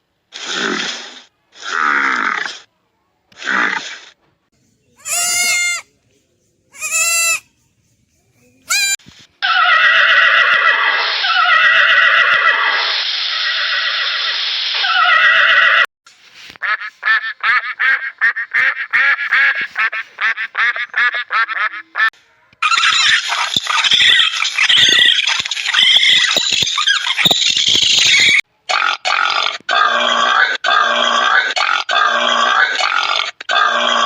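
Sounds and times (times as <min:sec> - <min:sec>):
many overlapping animal calls: 0:04.6 - 0:14.2, 0:21.8 - 0:28.4
animal bleat-like calls: 0:05.0 - 0:05.9, 0:06.7 - 0:07.5, 0:08.6 - 0:12.6.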